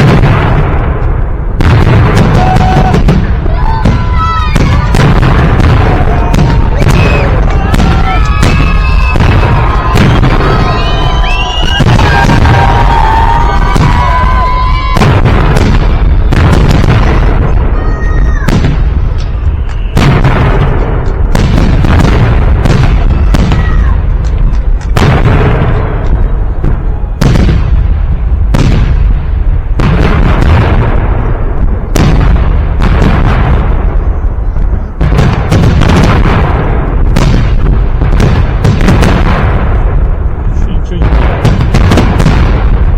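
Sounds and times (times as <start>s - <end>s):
whistling fireworks: 0.0s - 42.9s.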